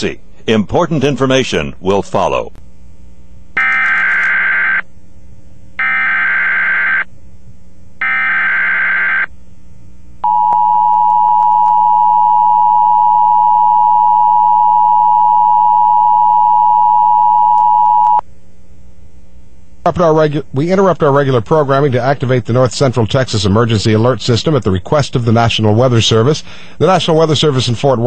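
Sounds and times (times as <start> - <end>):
loud two-tone alarm: 3.6 - 4.8, 5.8 - 7.1, 8.0 - 9.3, 10.2 - 18.2.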